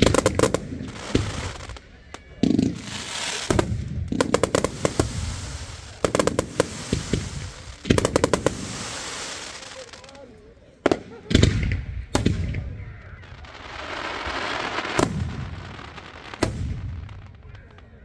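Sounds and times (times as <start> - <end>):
firework bangs: 0.0 - 10.1, 10.8 - 18.0
firework crackling hiss: 2.7 - 10.3.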